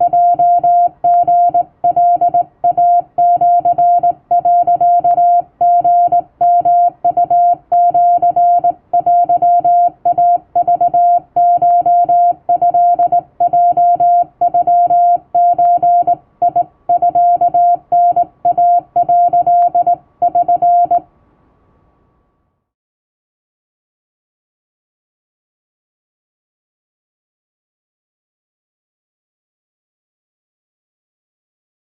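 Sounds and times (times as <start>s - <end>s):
morse code beeps: 0.0s - 21.0s.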